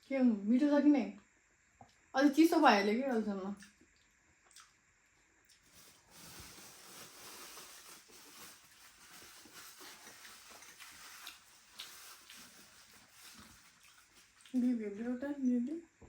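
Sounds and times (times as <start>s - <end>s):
small clicks of chewing: 1.1s - 2.0s, 3.1s - 4.8s, 5.4s - 5.9s, 9.9s - 12.6s, 13.3s - 15.8s
soft rustling: 5.7s - 15.3s.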